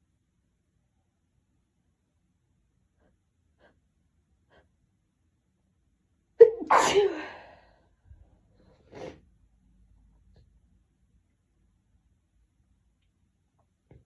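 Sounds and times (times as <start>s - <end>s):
person sneezing: 6.4s - 7.7s.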